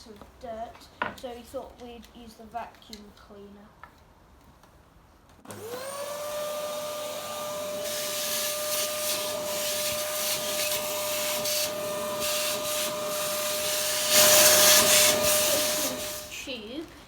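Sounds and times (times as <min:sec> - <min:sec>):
vacuum cleaner motor whine: 0:05.5 - 0:16.6
vacuum sucking loose dirt: 0:05.5 - 0:16.8.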